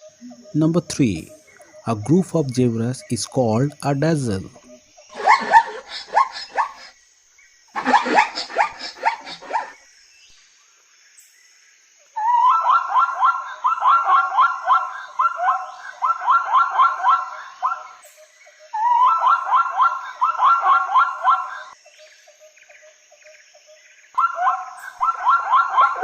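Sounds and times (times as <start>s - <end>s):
zebra barking yelps: 0.0s - 6.9s, 7.8s - 9.8s, 12.3s - 18.0s, 18.8s - 21.8s, 24.2s - 26.0s.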